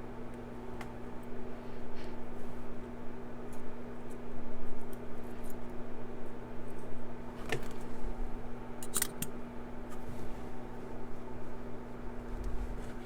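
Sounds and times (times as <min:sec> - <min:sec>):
steady low hum: 0:00.0 - 0:13.0
metal lock parts clicking: 0:08.8 - 0:09.3.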